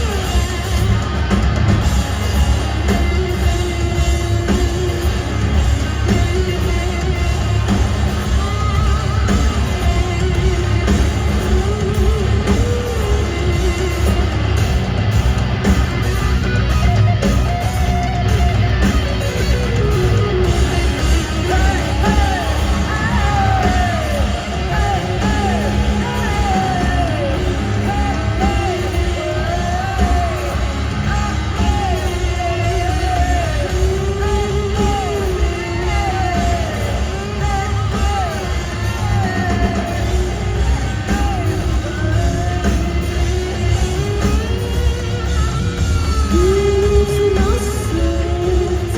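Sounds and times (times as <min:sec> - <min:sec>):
person singing: 0:00.0 - 0:14.8, 0:16.0 - 0:48.9
live rock band playing: 0:00.0 - 0:48.9.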